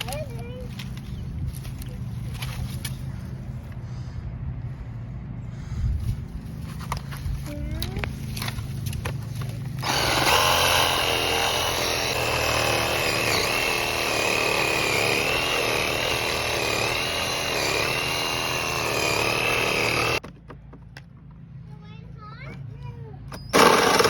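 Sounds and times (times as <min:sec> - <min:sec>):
reciprocating saw cutting: 0:09.8 - 0:20.2, 0:23.5 - 0:24.0.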